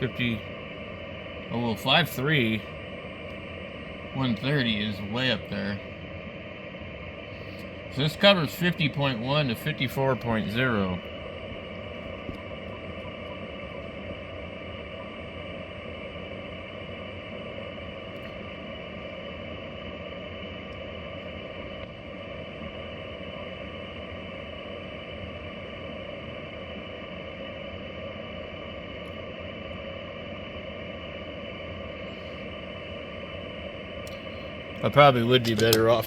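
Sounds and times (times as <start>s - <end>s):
radio static hiss: 0.0s - 14.3s, 32.0s - 36.0s.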